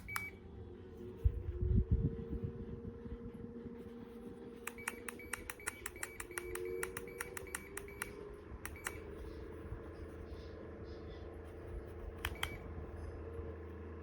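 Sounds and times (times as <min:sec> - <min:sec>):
short clicking beeps: 0:00.0 - 0:00.4, 0:04.7 - 0:09.1, 0:12.2 - 0:12.6
low electric hum: 0:00.0 - 0:14.0.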